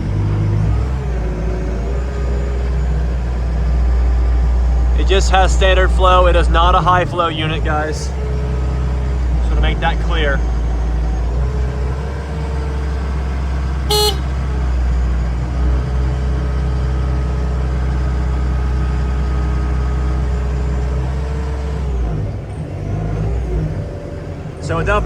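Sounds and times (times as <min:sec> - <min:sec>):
diesel engine running: 0:00.0 - 0:25.0
short beep: 0:13.9 - 0:14.3.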